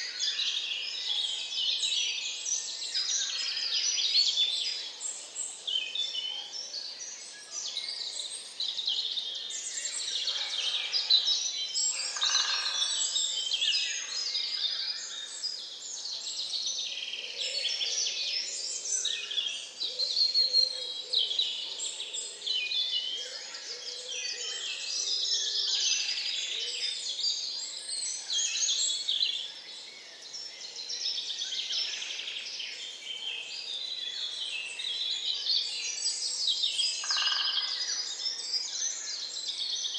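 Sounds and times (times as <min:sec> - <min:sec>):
birds chirping and trilling: 0:36.0 - 0:39.9.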